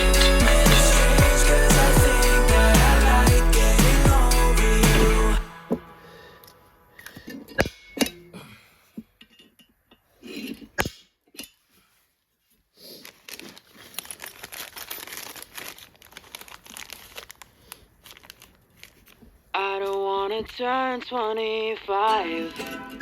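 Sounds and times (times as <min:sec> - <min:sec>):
packaging crinkling and rustling: 0:12.9 - 0:19.5.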